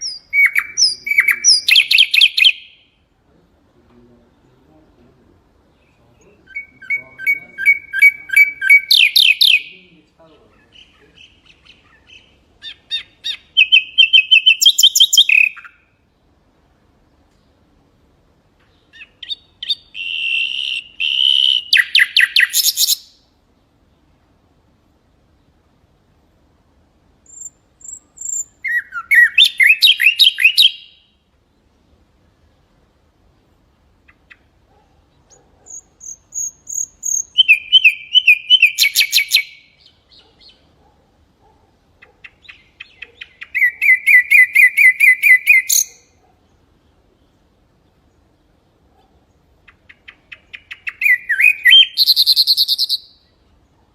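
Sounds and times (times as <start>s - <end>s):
bird singing whistled phrase: 0.0s - 2.7s, 6.3s - 9.8s, 19.2s - 23.0s, 27.4s - 30.9s, 36.1s - 39.6s, 50.9s - 53.2s.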